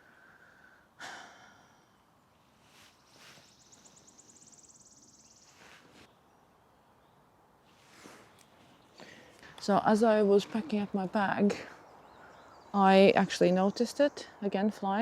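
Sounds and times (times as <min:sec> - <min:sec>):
soft rustles: 0:02.5 - 0:04.1, 0:05.4 - 0:06.2, 0:07.6 - 0:09.7.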